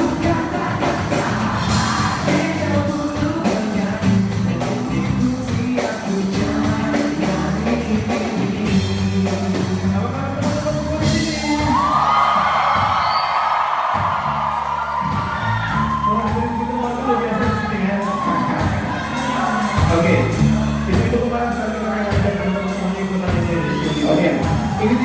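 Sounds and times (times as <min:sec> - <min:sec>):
person singing: 0:00.0 - 0:12.5
drum beat: 0:00.0 - 0:21.4, 0:23.2 - 0:25.0
live band playing: 0:00.0 - 0:25.0.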